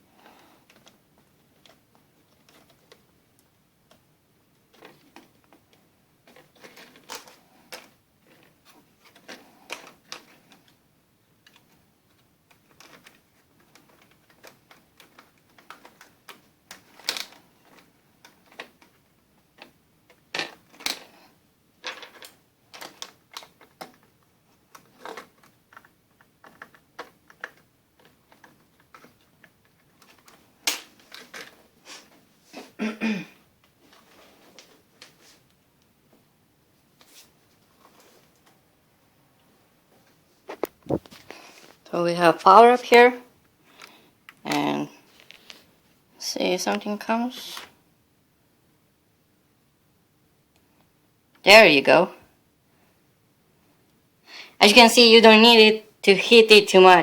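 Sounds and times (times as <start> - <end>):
plastic laptop parts clicking: 6.3 - 10.8, 11.4 - 19.0, 21.8 - 31.6.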